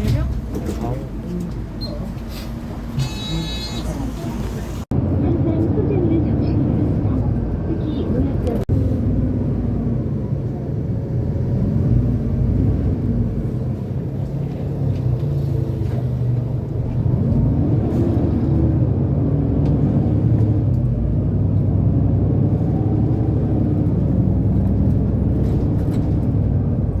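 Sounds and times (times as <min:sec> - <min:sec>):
bus engine rumbling: 0:00.0 - 0:27.0.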